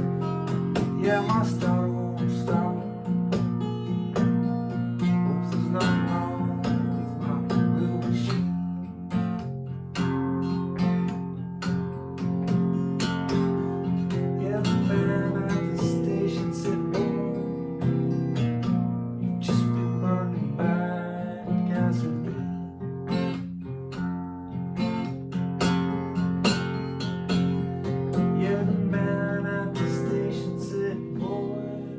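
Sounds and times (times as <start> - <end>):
blues guitar: 0.0 - 31.9.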